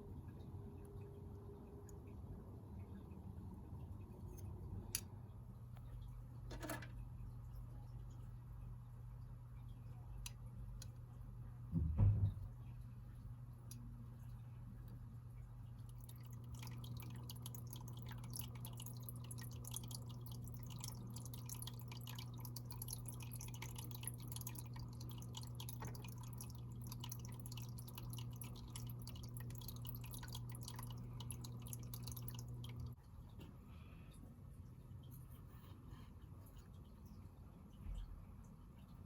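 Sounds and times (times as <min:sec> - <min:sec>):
aquarium air pump humming: 0:00.0 - 0:39.0
bubbles popping and dripping: 0:15.0 - 0:33.0.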